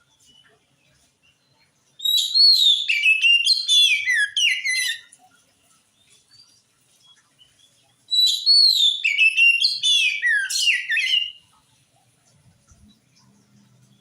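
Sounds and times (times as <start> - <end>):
bird singing whistled notes: 1.3 - 5.1, 7.4 - 11.5.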